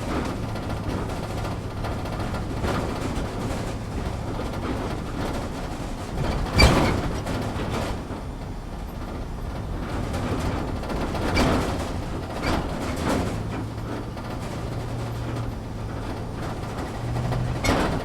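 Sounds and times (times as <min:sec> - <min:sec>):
vehicle body rattling: 0:00.0 - 0:18.0
vehicle engine hum and rumble: 0:00.0 - 0:18.0.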